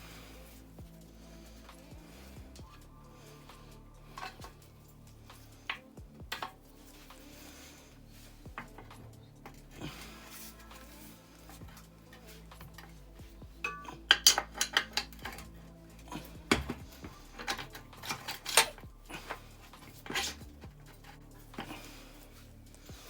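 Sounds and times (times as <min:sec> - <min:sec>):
metal parts clinking and clanking: 0:04.1 - 0:07.0, 0:08.3 - 0:22.4.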